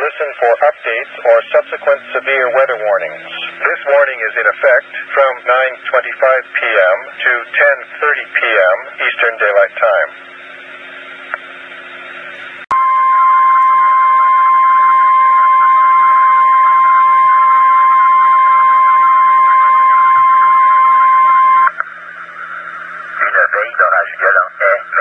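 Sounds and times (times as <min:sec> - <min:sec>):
steady high alert tone: 0:12.7 - 0:25.0
radio receiver hiss: 0:18.3 - 0:25.0.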